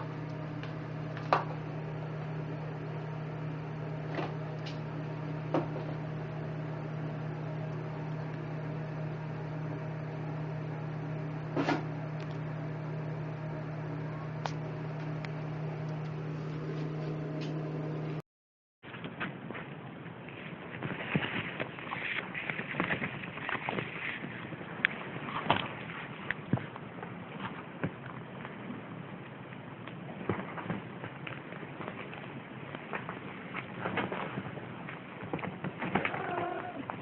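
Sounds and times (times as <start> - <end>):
low electrical hum: 0.0 - 18.2, 18.9 - 37.0.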